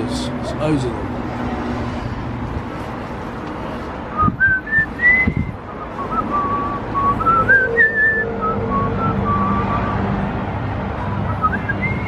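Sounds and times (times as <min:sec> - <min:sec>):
person whistling a tune: 0:04.2 - 0:10.0, 0:11.3 - 0:12.0.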